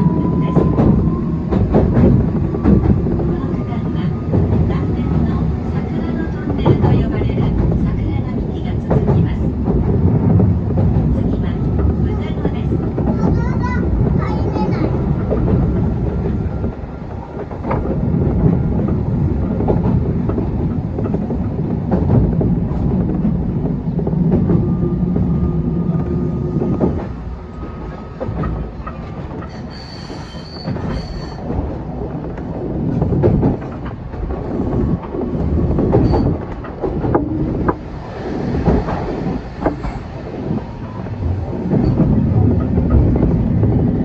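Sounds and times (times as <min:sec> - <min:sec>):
knocks and clatter: 0:30.6 - 0:44.0.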